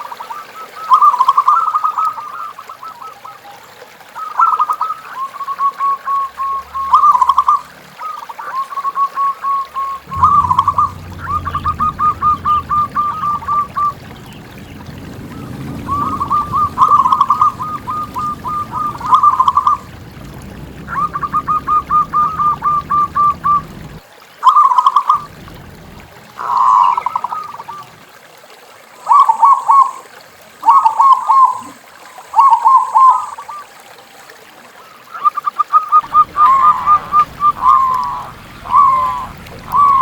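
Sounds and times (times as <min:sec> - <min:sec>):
doves cooing in staccato notes: 0:10.0 - 0:24.0, 0:25.2 - 0:27.9, 0:36.0 - 0:40.0.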